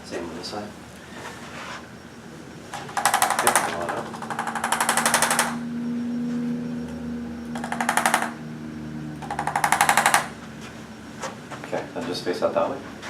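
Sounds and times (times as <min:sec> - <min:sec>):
adjusting tool rapid taps: 0:02.8 - 0:05.6, 0:07.6 - 0:08.4, 0:09.2 - 0:10.4.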